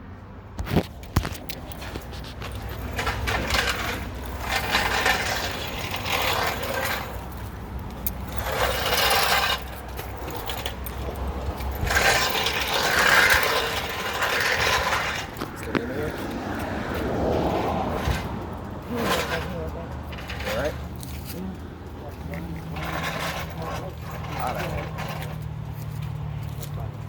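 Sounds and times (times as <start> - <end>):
metal tools clicking and clattering: 0.8 - 15.9.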